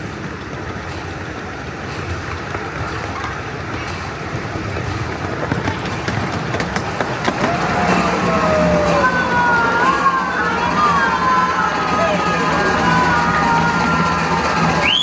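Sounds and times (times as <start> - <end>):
miniature train wheels on rails: 0.0 - 15.0
wavering high squeal: 7.4 - 15.0.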